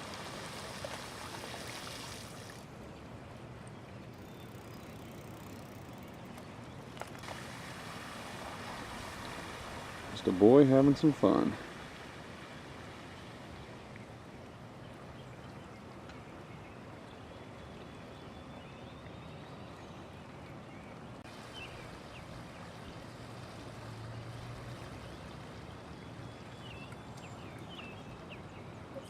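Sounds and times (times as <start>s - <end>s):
floodwater rushing: 0.0s - 3.6s, 6.9s - 15.1s, 21.2s - 27.2s.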